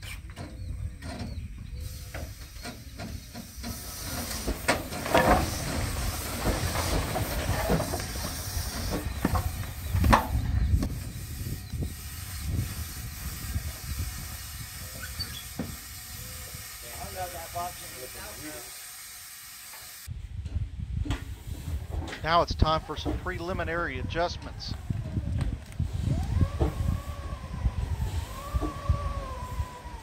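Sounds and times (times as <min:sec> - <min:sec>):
steam engine venting steam: 0:01.3 - 0:20.1, 0:21.1 - 0:30.0
steady low rumble: 0:20.1 - 0:30.0.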